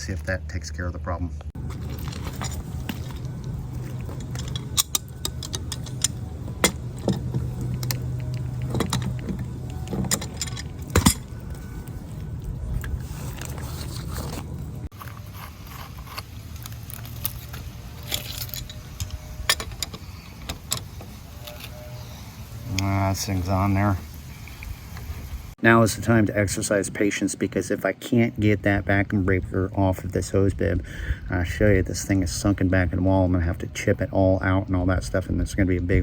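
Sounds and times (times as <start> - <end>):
steady low hum: 0.0 - 25.6
metal clinks and scrapes: 1.6 - 22.2.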